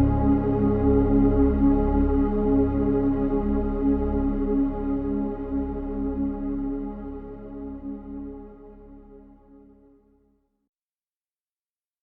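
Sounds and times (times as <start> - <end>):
ambient synthesizer music: 0.0 - 6.7.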